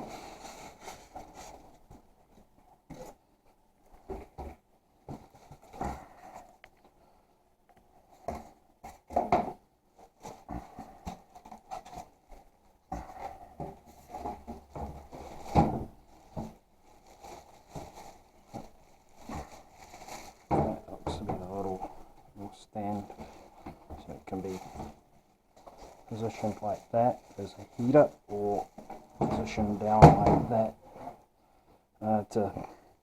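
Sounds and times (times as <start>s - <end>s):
scrapes and knocks of handling: 0.0s - 7.0s, 7.9s - 31.8s
packaging rustling: 10.0s - 22.2s, 22.9s - 30.7s.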